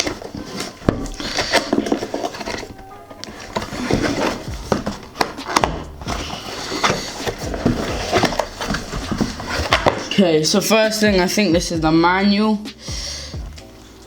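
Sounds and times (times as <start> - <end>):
cardboard packaging rustling: 0.0 - 11.0.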